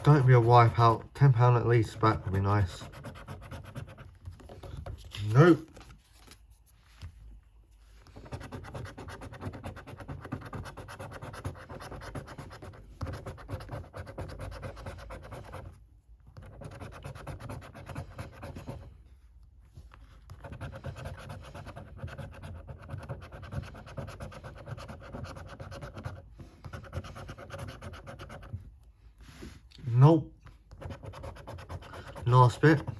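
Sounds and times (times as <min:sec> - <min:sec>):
scratchcard being scratched: 0:00.0 - 0:04.2, 0:08.2 - 0:15.7, 0:16.4 - 0:18.8, 0:20.3 - 0:28.5, 0:30.8 - 0:32.9.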